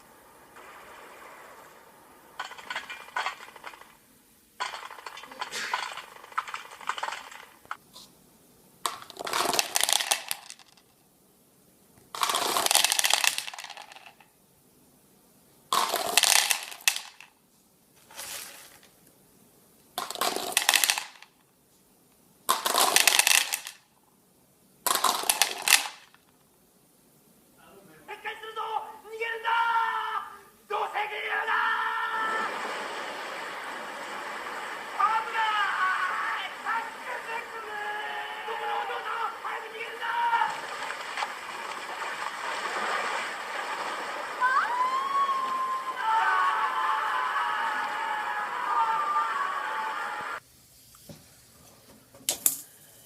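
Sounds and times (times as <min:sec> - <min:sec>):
harsh crashing noise: 0:00.0 - 0:04.0
clinking and rattling: 0:02.4 - 0:04.0, 0:04.6 - 0:07.8, 0:08.9 - 0:10.8, 0:24.9 - 0:26.2.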